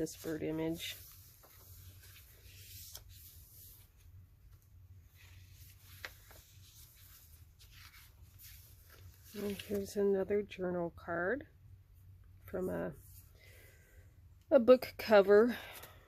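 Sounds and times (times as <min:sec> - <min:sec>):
paper pages rustling: 0:00.0 - 0:10.0.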